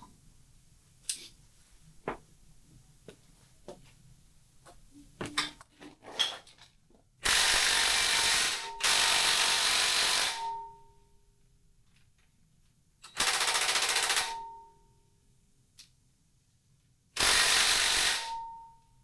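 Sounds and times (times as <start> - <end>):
tools clicking and knocking on metal: 5.2 - 6.8.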